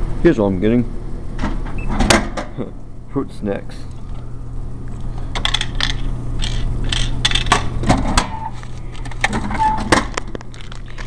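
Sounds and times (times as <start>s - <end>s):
vending machine motor hum: 0.0s - 11.0s.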